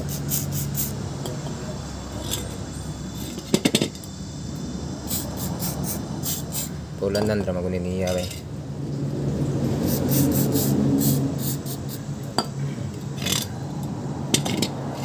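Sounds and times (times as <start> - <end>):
metal tools clinking: 2.1 - 4.2, 8.0 - 8.5, 13.2 - 13.6.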